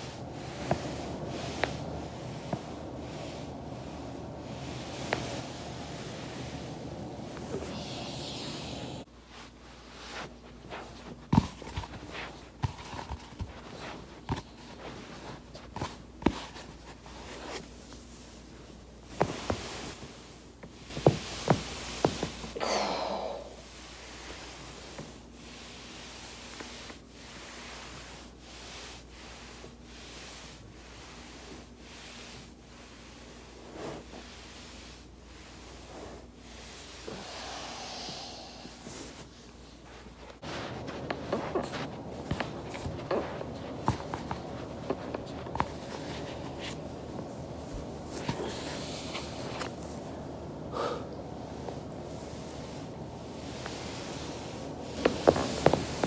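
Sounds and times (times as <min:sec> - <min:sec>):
clothing rustling on foam roller: 0:00.0 - 0:22.6, 0:23.2 - 0:56.0
steady background noise: 0:00.0 - 0:25.1, 0:36.6 - 0:56.0.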